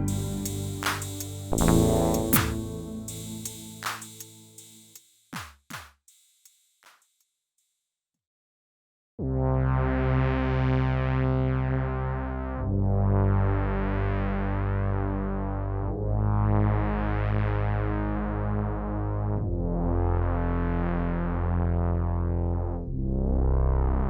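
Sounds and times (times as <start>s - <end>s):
synthesizer sustained chords: 0.0s - 4.6s.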